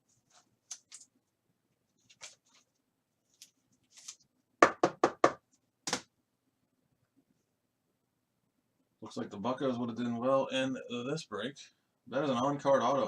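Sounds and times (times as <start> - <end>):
cards being handled: 2.0 - 4.3
sharp knocks on hard surface: 4.6 - 6.0.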